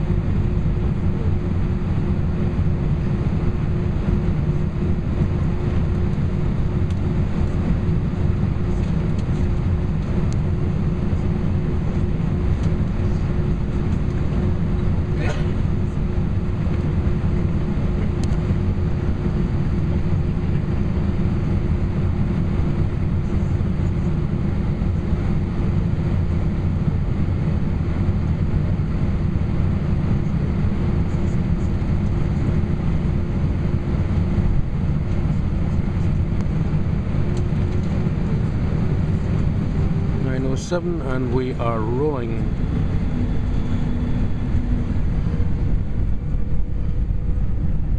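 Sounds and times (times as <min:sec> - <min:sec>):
aircraft cabin rumble: 0:00.0 - 0:47.9
steady hum: 0:00.0 - 0:47.9.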